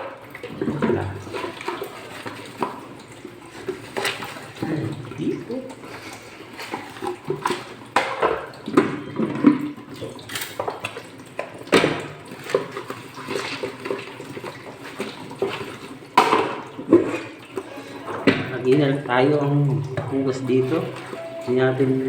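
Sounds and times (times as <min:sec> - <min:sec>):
water running in a sink: 0:00.0 - 0:22.0
dishes clattering: 0:19.8 - 0:22.0.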